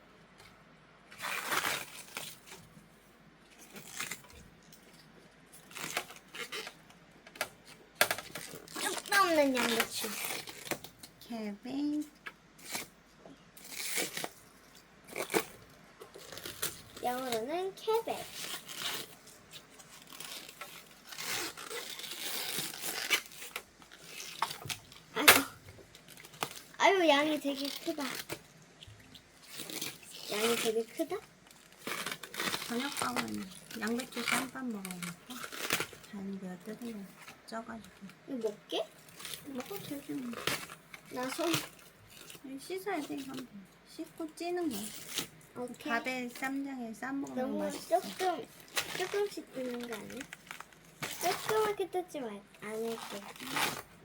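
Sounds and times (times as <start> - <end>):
cabbage leaf tearing: 1.2 - 2.6, 3.6 - 4.3, 5.6 - 6.8, 8.3 - 10.9, 12.6 - 12.9, 13.6 - 14.5, 15.1 - 17.4, 18.2 - 26.8, 27.4 - 28.4, 29.4 - 36.0, 39.0 - 43.5, 47.6 - 51.7, 52.6 - 53.9.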